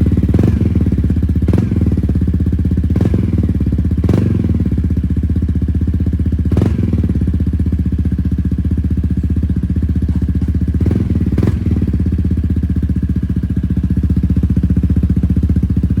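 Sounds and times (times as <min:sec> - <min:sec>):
scooter engine idling: 0:00.0 - 0:16.0.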